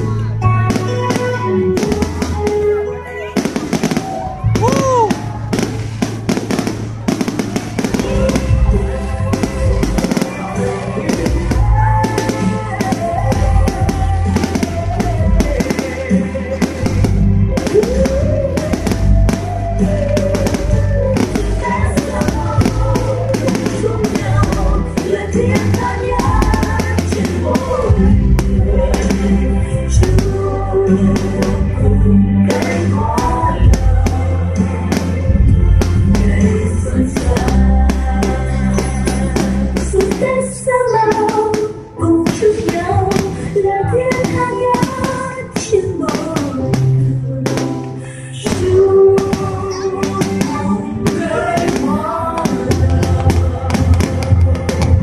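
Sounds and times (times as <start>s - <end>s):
fireworks bursting and crackling: 0.0s - 55.0s
music with heavy drum beat: 3.4s - 40.2s, 48.5s - 55.0s.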